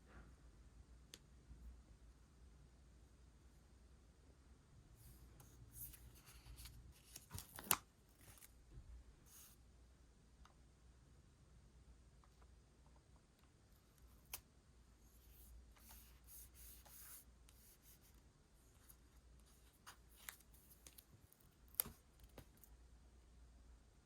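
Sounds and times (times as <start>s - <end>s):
soft paper rustling: 5.0s - 8.6s, 9.3s - 9.6s, 15.0s - 22.7s.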